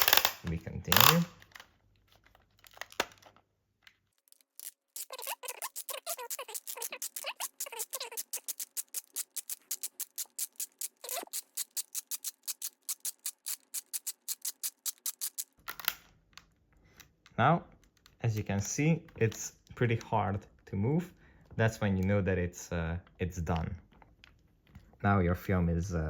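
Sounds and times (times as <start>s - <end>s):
camera thumbwheel ratcheting clicks: 0.0s - 1.5s
squeaking: 4.2s - 15.6s.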